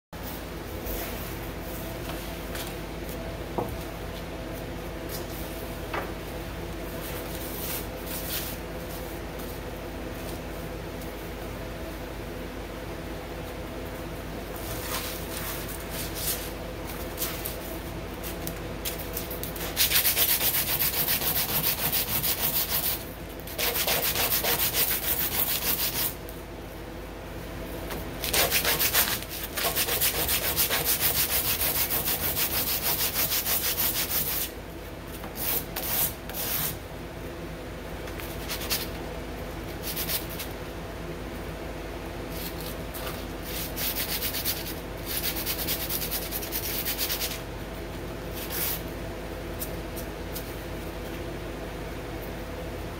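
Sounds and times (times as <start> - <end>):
sandpaper rubbing: 19.7 - 23.0, 23.6 - 26.2, 28.3 - 34.5, 43.5 - 47.4.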